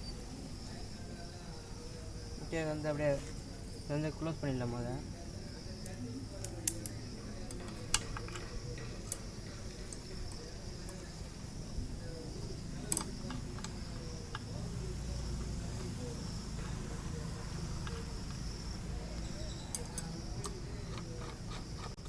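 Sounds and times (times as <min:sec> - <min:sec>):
sharp clicks of parts handled: 0:05.8 - 0:11.1, 0:12.8 - 0:14.5.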